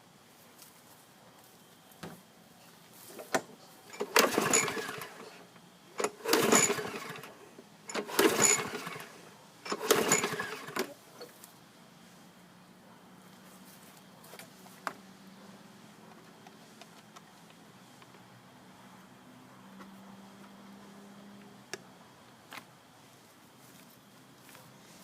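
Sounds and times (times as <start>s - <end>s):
mower engine pull-starts: 3.1s - 11.3s.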